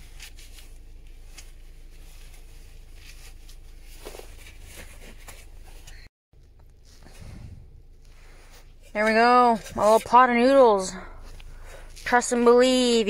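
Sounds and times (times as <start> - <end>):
steady low rumble: 6.4 - 9.0.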